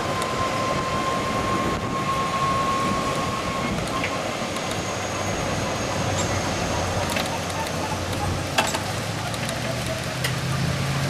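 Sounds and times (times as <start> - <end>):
thin steady whine: 0.0 - 9.1
golf cart running: 5.2 - 11.0.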